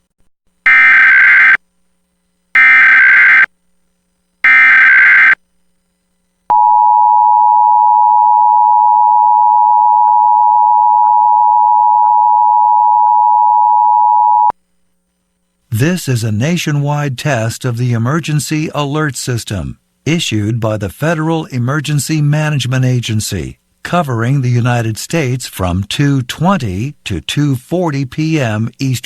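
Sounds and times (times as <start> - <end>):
screeching digital data tones: 4.5 - 5.4.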